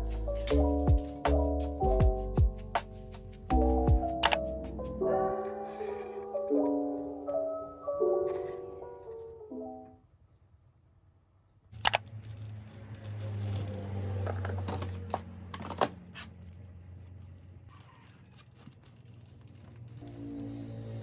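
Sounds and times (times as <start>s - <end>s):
packaging rustling: 17.3s - 21.0s
packaging crinkling and tearing: 17.5s - 21.0s.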